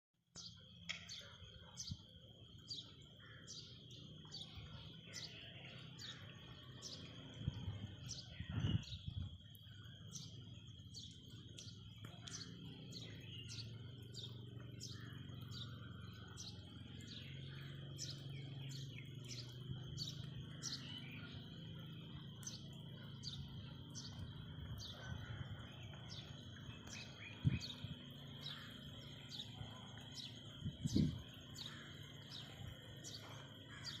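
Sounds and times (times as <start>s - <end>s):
small bird chirping: 0.4s - 34.0s.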